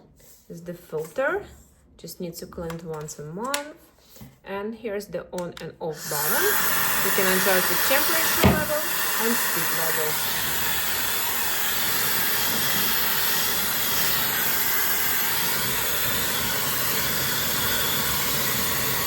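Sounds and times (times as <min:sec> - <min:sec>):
hair dryer blowing air: 0:06.0 - 0:19.0.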